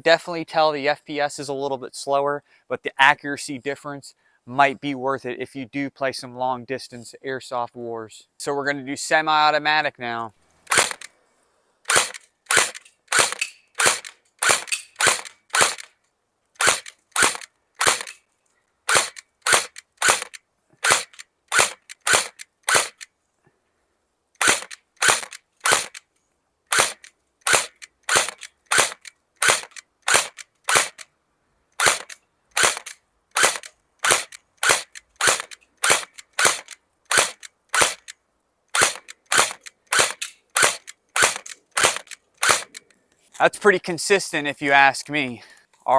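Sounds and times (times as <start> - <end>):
airsoft gun single shots: 10.7 - 11.1, 11.9 - 15.9, 16.6 - 18.1, 18.9 - 23.0, 24.4 - 26.0, 26.7 - 31.0, 31.8 - 38.1, 38.8 - 42.8.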